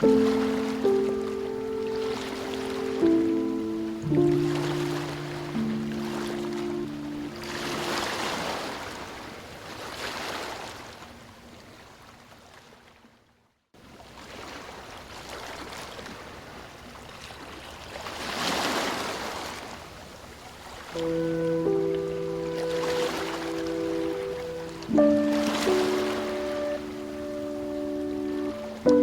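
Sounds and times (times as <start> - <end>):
ocean surf washing onto beach: 0.0 - 9.6, 20.9 - 29.0.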